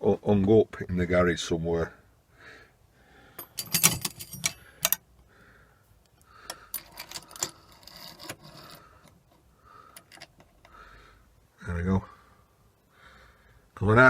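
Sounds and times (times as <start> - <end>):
metal clock parts clattering: 3.4 - 5.0, 6.5 - 10.7.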